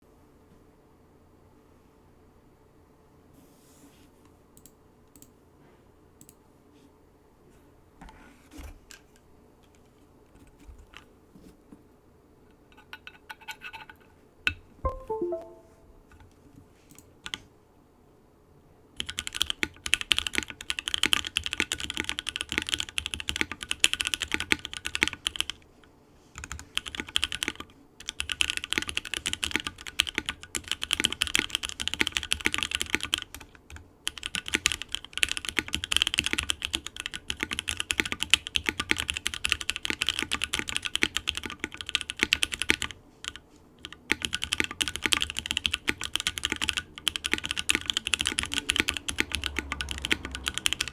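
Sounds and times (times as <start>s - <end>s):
mechanical keyboard typing: 19.0s - 25.6s, 26.4s - 50.9s.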